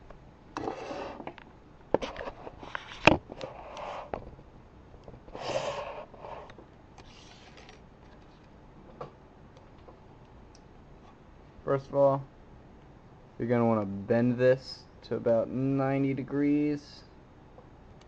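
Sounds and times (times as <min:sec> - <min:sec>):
rustling and scraping: 0:00.6 - 0:04.4, 0:05.1 - 0:08.6.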